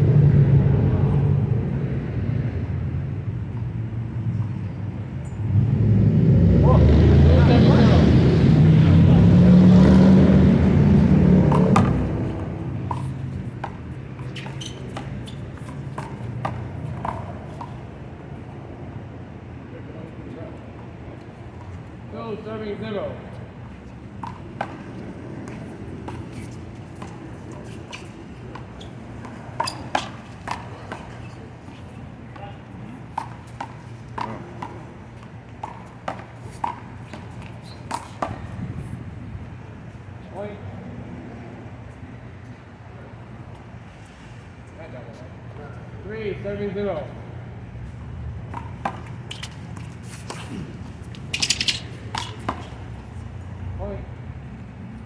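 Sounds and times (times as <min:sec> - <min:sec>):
low vehicle rumble: 0:00.0 - 0:14.2
handball hitting wall and pavement: 0:09.9 - 0:18.6, 0:23.9 - 0:39.5, 0:47.9 - 0:53.6.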